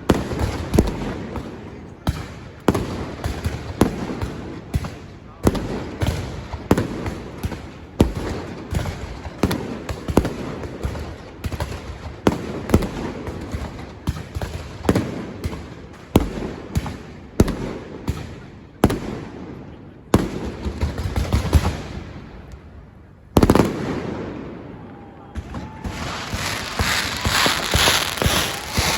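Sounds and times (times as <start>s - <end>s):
fireworks bangs: 23.4s - 28.9s.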